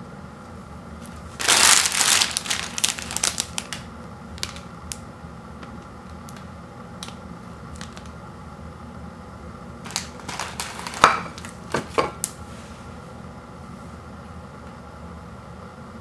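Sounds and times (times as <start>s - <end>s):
steady low hum: 0.0s - 16.0s
crinkling and scraping: 1.0s - 5.0s, 5.6s - 8.2s, 9.8s - 12.9s
objects clicking: 9.9s - 12.3s.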